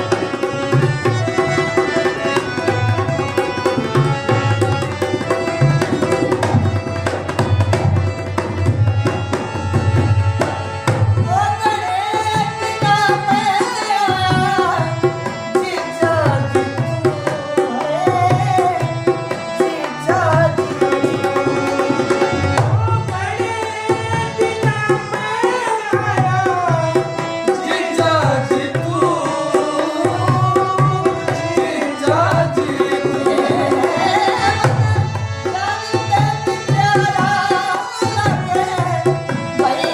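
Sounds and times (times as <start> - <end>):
hand drum rhythm: 0.0 - 39.9
person singing ornamented melody: 23.1 - 39.9.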